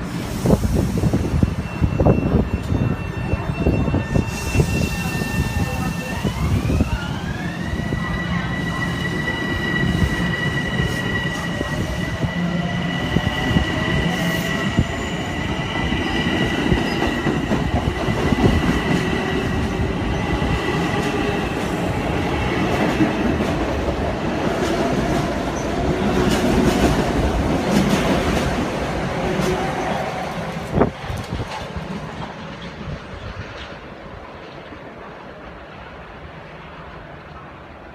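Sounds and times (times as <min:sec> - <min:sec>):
train rumble and rail noise: 0:00.0 - 0:37.9.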